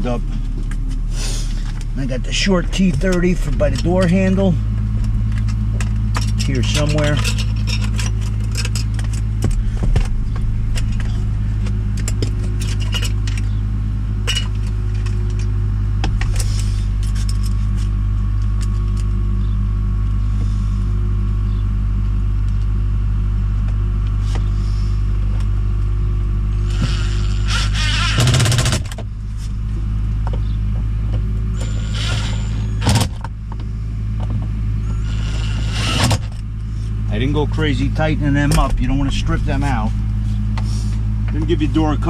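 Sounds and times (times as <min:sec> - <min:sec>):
steady low hum: 0:00.0 - 0:42.0.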